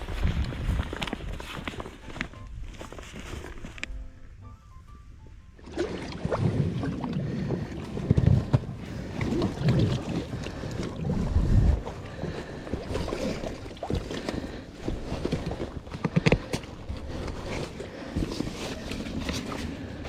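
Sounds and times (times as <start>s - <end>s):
wind buffeting microphone: 0.0s - 1.5s, 6.3s - 14.2s
water sloshing and splashing: 5.6s - 20.0s.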